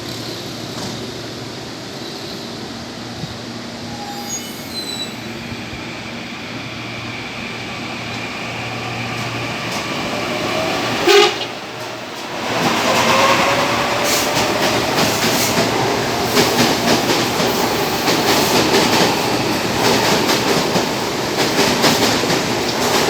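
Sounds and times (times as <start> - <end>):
faint high squeals: 3.8 - 5.5
train horn blast: 11.0 - 11.7.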